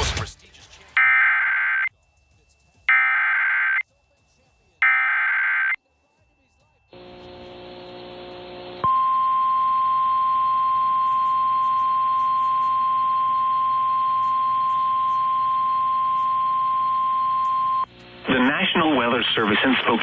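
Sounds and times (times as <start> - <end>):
radio receiver static: 0.0 - 1.9, 2.9 - 3.8, 7.0 - 20.0
steady alarm tone: 1.0 - 4.0, 4.8 - 5.8, 6.9 - 19.2.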